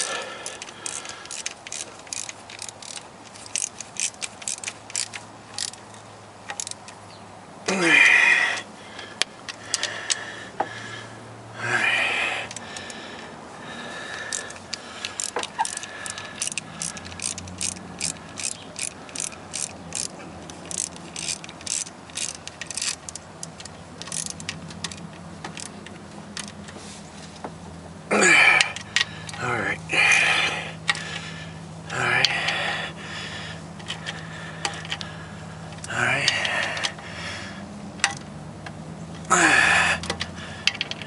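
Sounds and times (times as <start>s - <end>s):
hand ratchet clicking: 0.0s - 7.0s, 8.5s - 10.2s, 14.1s - 26.8s, 28.3s - 29.4s, 33.8s - 37.2s, 38.0s - 41.0s.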